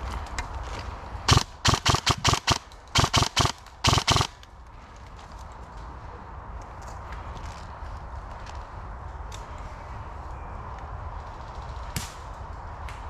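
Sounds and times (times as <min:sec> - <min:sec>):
airsoft gun shots: 0:01.3 - 0:04.4.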